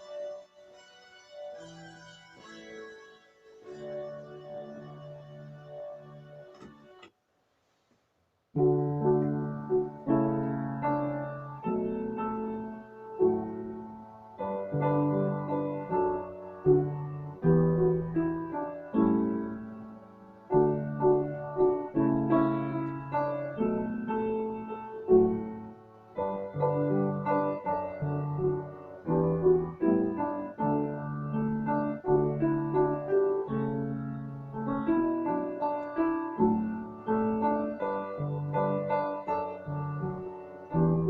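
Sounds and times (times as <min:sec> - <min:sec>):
piano piece: 0:00.0 - 0:07.1, 0:08.6 - 0:41.0.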